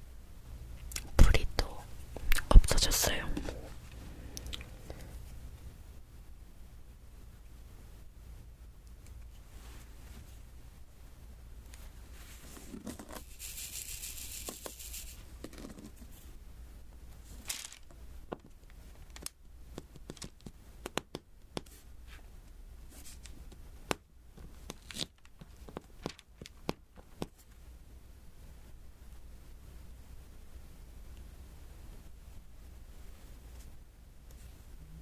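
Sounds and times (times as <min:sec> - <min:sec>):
papery rasping hiss: 0:01.2 - 0:05.5, 0:11.6 - 0:16.4, 0:17.1 - 0:18.1
beads tapped onto canvas: 0:18.3 - 0:21.7.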